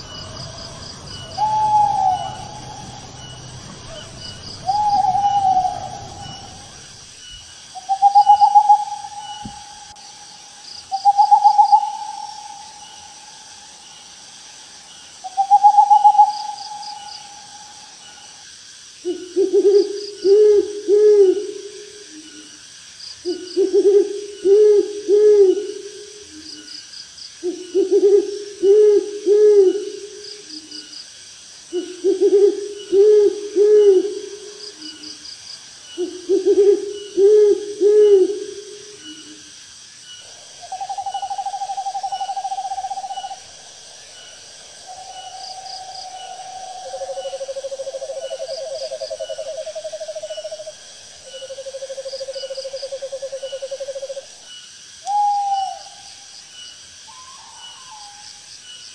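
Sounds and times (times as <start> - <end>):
owl trills: 0.0 - 7.1, 7.8 - 10.2, 10.9 - 13.1, 15.2 - 18.4, 40.3 - 50.6, 55.0 - 56.0
owls hooting: 0.0 - 13.8, 15.2 - 18.4, 40.2 - 50.6, 55.1 - 56.0
insects chirping: 0.0 - 58.9.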